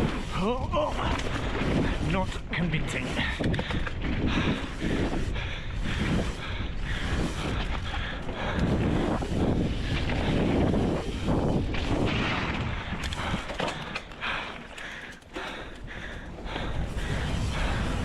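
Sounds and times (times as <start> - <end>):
bike rattling over bumps: 0.0 - 2.5, 3.1 - 18.0
rushing wind noise: 0.0 - 18.0
tyres on dirt: 9.7 - 18.0.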